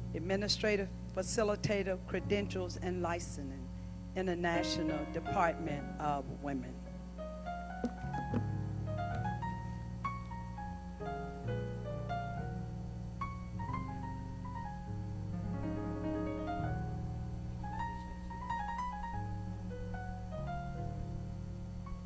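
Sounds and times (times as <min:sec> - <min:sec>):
gentle piano music: 0:01.5 - 0:03.7, 0:04.3 - 0:22.0.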